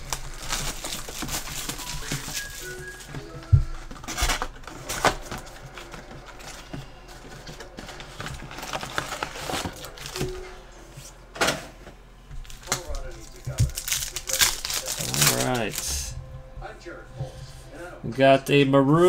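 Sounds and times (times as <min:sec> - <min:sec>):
foil wrappers crinkling: 0:00.0 - 0:10.5, 0:12.4 - 0:16.2.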